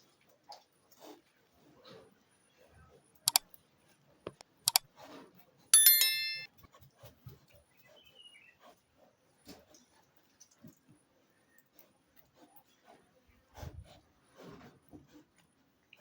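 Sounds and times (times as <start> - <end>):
bright metallic ding: 5.8 - 6.5.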